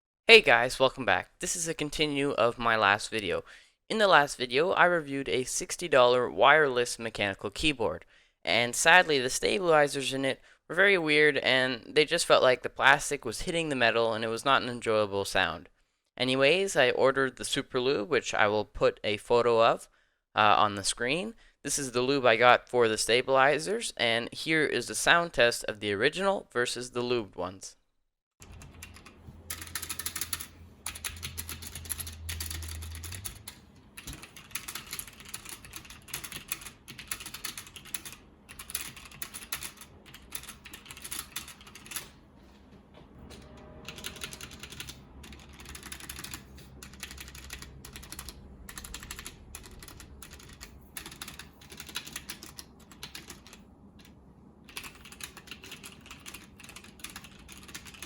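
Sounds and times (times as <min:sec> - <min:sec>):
keyboard keys clacking: 0:28.4 - 0:42.1, 0:43.3 - 0:53.6.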